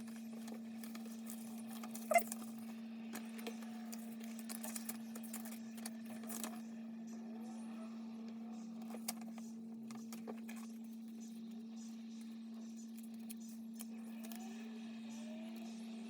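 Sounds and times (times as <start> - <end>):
packaging rubbing squeaks: 1.9 - 2.4.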